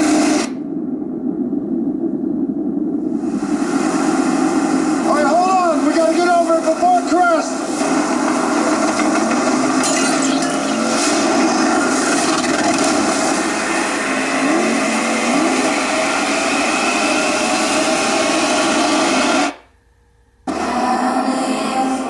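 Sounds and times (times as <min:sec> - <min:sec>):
noisy music from speaker: 0:20.5 - 0:22.0.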